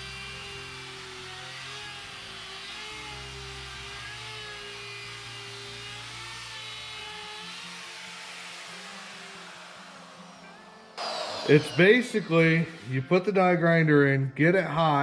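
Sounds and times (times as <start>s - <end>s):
die grinder whining into wood: 0.0s - 10.4s.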